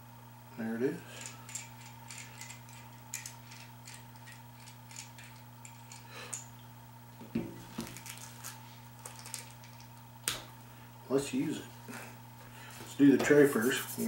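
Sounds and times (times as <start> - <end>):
steady electrical hum: 0.0 - 14.0
small tools clicking and tapping: 1.2 - 6.5.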